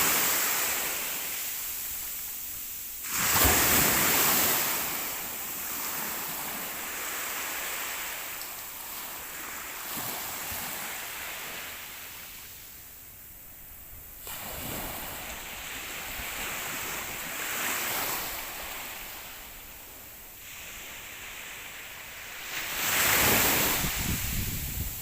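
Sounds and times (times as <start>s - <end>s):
waves breaking on shore: 0.0s - 25.0s
wind on microphone: 22.6s - 25.0s.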